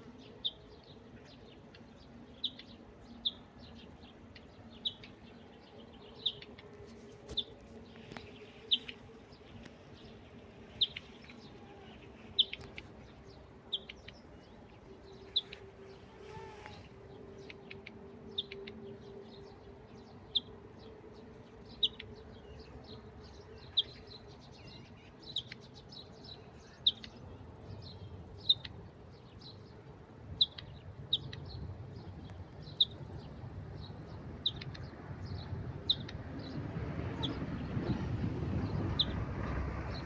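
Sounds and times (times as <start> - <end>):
bird high chirp: 7.3 - 20.6, 21.7 - 28.8.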